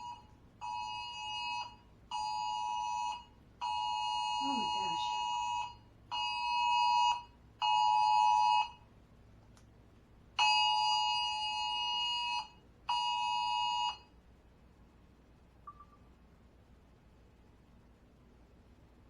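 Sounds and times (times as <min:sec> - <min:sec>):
two-tone alarm beeps from phone: 0:00.0 - 0:08.8.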